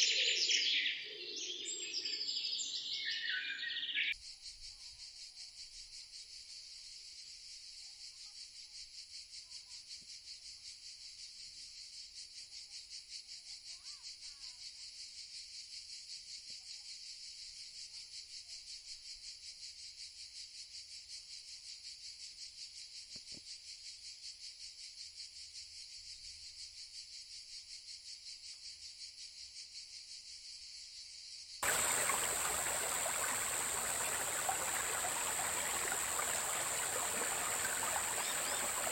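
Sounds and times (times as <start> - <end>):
faint bird chirps: 31.6 - 38.9
insect chirring: 31.6 - 38.9
running water: 31.6 - 38.9.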